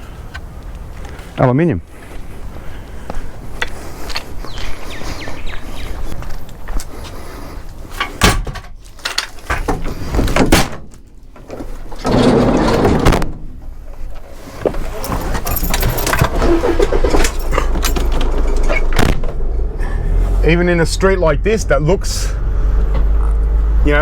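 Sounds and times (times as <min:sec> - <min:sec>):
scrap metal knocks and clunks: 0:07.9 - 0:13.7, 0:14.5 - 0:19.4.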